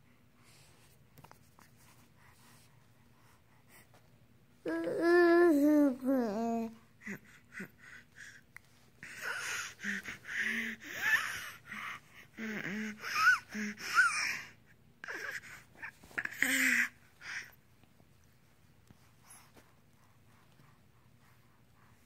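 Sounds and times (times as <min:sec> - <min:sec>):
child wheezing and gasping: 0:09.1 - 0:15.5.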